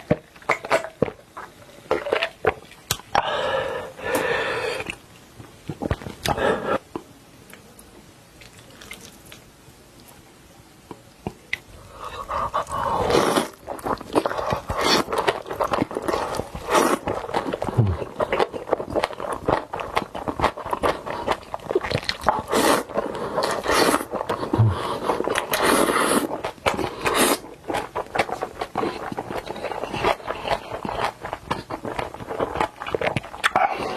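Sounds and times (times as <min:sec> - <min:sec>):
person chewing and smacking: 0:04.1 - 0:07.6, 0:10.9 - 0:33.9.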